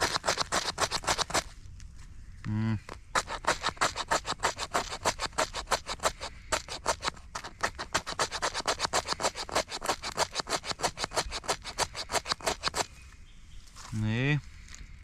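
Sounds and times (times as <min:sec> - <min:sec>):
knife scraping ferro rod: 0:00.0 - 0:01.5, 0:02.9 - 0:12.9.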